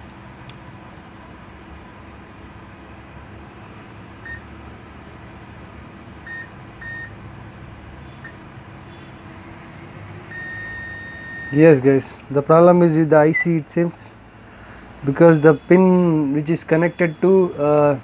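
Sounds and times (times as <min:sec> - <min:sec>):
multimeter continuity beeps: 0:00.0 - 0:01.9, 0:03.4 - 0:09.1, 0:10.3 - 0:12.8.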